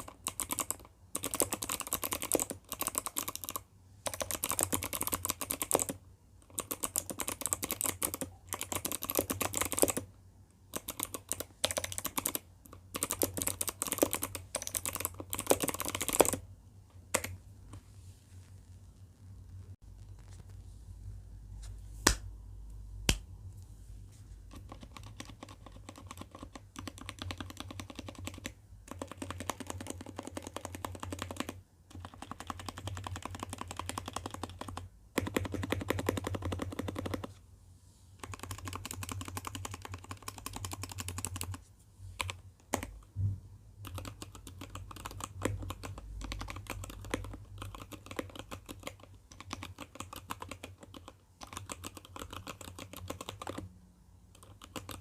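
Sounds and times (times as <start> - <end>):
mechanical keyboard typing: 0.0 - 10.1, 10.7 - 16.4, 17.1 - 17.4, 24.5 - 37.3, 38.2 - 41.6, 42.2 - 43.0, 43.8 - 53.7, 54.3 - 55.0.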